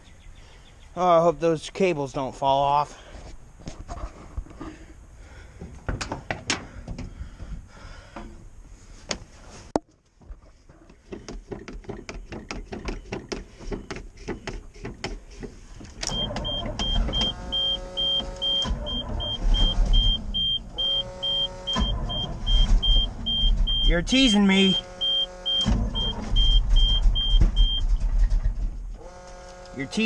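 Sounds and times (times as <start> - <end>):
truck engine cranking: 15.9 - 30.0
repeating high beep: 16.2 - 24.0, 24.7 - 27.8.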